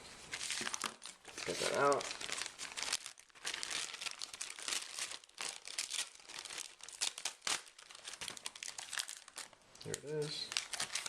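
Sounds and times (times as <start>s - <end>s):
crinkling and rustling by hand: 0.0s - 11.0s.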